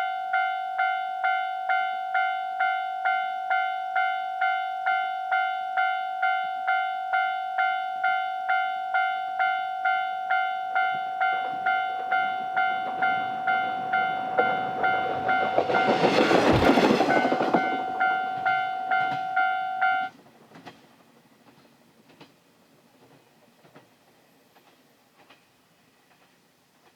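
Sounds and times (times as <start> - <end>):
level crossing alarm dinging: 0.0 - 20.1
diesel railcar passing: 5.2 - 26.9.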